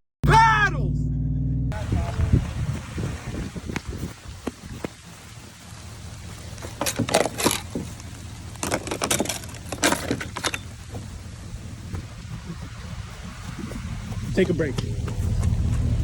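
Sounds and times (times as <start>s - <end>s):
low engine rumble: 0.2s - 16.0s
rattling and clattering bursts: 6.3s - 15.6s.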